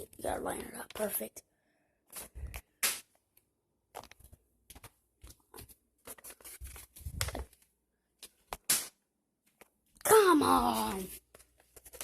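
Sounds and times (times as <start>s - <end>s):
paper rustling and crinkling: 4.0s - 8.6s, 10.5s - 12.0s.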